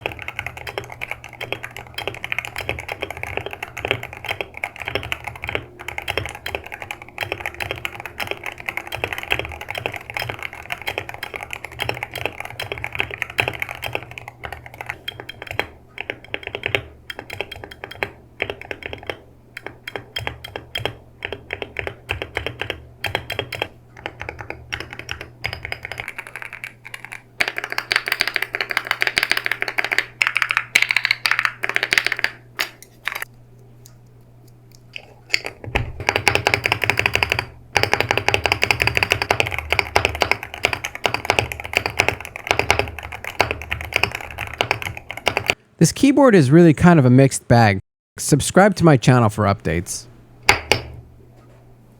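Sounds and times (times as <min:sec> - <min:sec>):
fast typing on keyboard: 0:00.0 - 0:32.5, 0:35.4 - 0:45.6.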